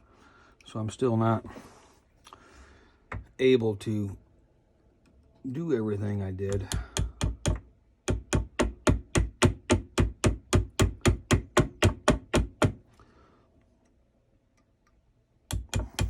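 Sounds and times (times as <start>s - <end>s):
mallet striking a chisel: 15.5s - 16.0s.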